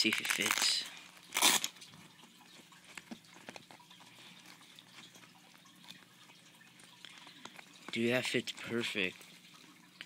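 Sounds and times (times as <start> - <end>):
nylon pouch rustling: 0.0 - 1.8.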